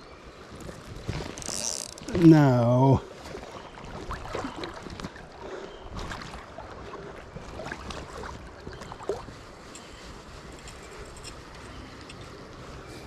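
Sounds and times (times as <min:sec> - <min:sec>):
river water flowing and gurgling: 0:00.1 - 0:09.7
small water splashes: 0:03.0 - 0:09.5.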